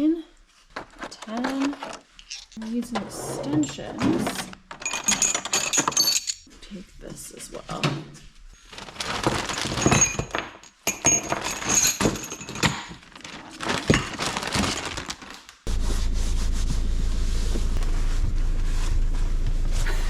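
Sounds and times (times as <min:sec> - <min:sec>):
metal sockets clinking: 0:02.2 - 0:02.6, 0:04.7 - 0:06.5
diesel car engine idling: 0:15.7 - 0:20.0.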